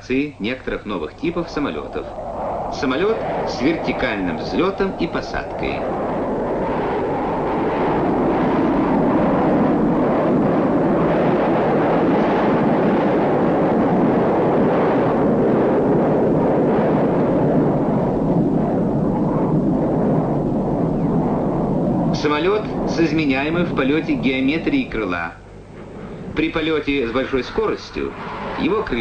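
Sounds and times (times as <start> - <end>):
jet engine noise: 0.0 - 29.0.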